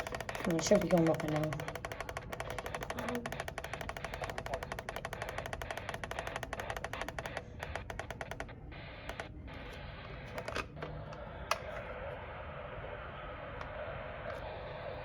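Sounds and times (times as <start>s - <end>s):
rapid interference ticking: 0.0s - 9.4s
radio static hiss: 0.0s - 15.0s.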